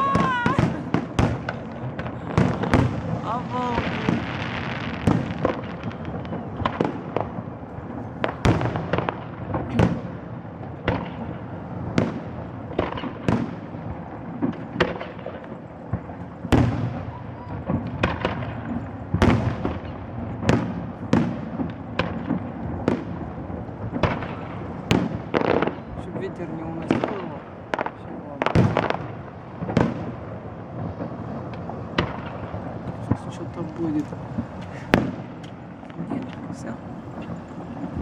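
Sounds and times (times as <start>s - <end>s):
firework shells bursting: 0.0s - 7.4s, 31.0s - 38.0s
fireworks crackling: 0.0s - 38.0s.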